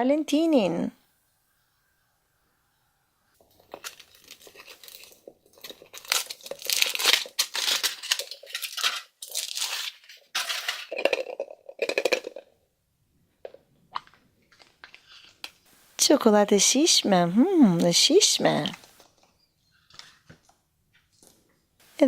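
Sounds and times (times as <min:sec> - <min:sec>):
foil wrapper crinkling: 0:03.4 - 0:12.2.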